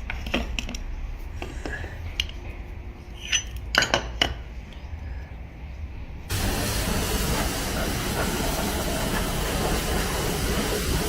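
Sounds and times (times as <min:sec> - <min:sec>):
metal tools clinking and knocking: 0:03.2 - 0:04.4.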